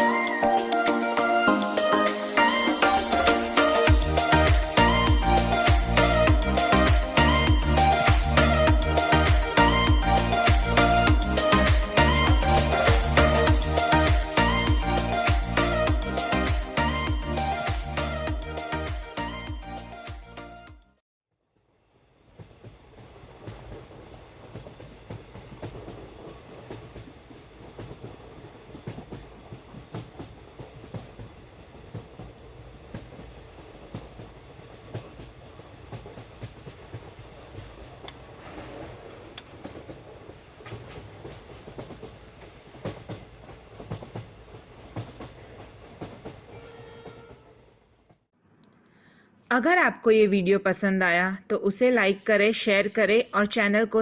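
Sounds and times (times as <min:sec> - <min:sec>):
sharp clicks from train wheels: 0:22.4 - 0:47.5.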